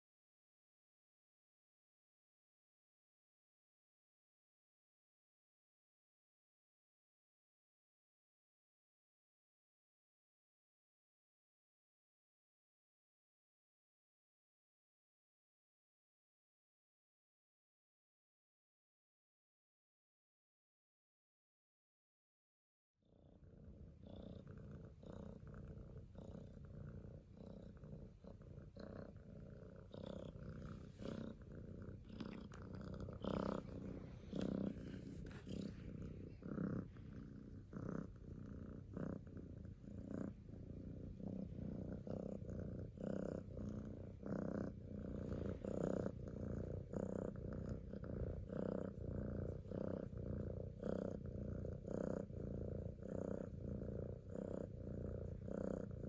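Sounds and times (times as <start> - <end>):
kitten purring: 23.1 - 56.0.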